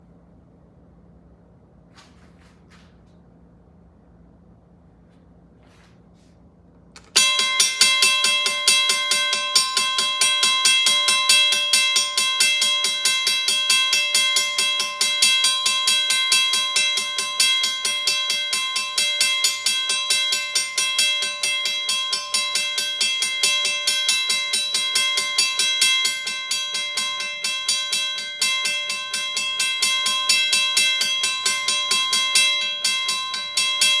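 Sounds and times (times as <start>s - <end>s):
mechanical bell ringing: 7.0s - 34.0s.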